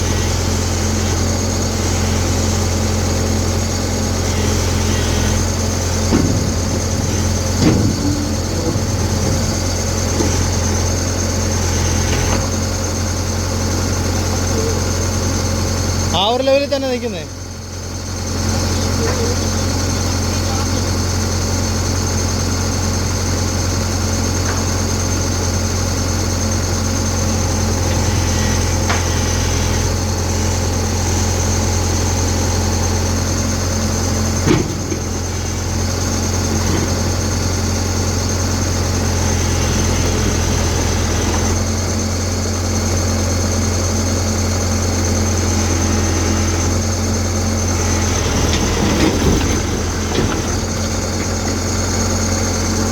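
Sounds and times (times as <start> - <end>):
excavator diesel engine running: 0.0 - 52.9
metal clanks: 5.9 - 10.7.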